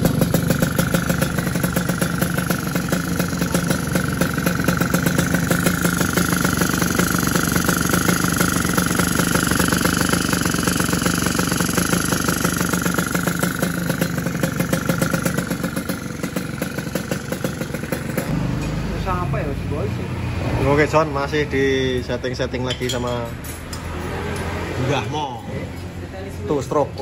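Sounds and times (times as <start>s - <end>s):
motorcycle engine idling: 0.0s - 20.0s.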